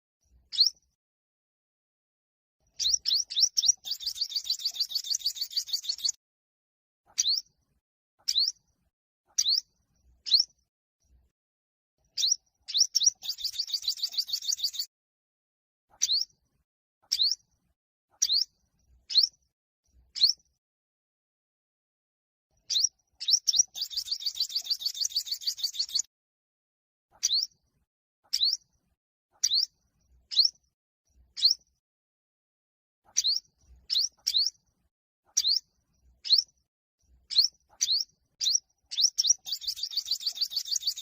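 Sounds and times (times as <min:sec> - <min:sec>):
high bird chirps sweeping upward: 0:00.5 - 0:00.8, 0:02.8 - 0:06.2, 0:07.1 - 0:07.5, 0:08.2 - 0:08.6, 0:09.4 - 0:09.6, 0:10.2 - 0:10.5, 0:12.2 - 0:14.9, 0:16.0 - 0:16.3, 0:17.1 - 0:17.4, 0:18.2 - 0:18.5, 0:19.1 - 0:19.3, 0:20.2 - 0:20.4, 0:22.6 - 0:26.1, 0:27.2 - 0:27.5, 0:28.3 - 0:28.6, 0:29.4 - 0:29.7, 0:30.3 - 0:30.6, 0:31.4 - 0:31.6, 0:33.1 - 0:34.6, 0:35.4 - 0:35.6, 0:36.2 - 0:36.6, 0:37.3 - 0:41.0.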